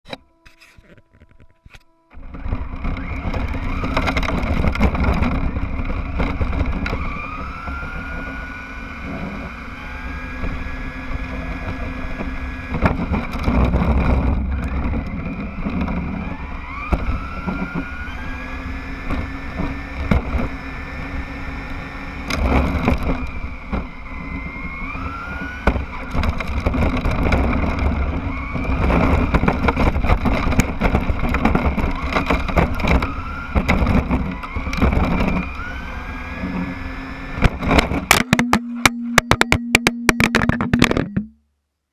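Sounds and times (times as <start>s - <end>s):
rumble and rattle from ground: 0.1s - 41.3s
toy car motor whining: 0.4s - 38.2s
sharp knocks and bumps: 37.4s - 41.4s.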